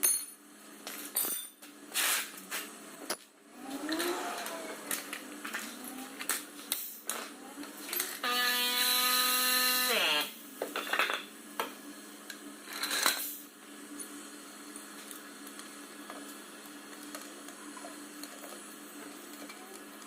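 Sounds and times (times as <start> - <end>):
power tool motor whirring: 8.1 - 10.4.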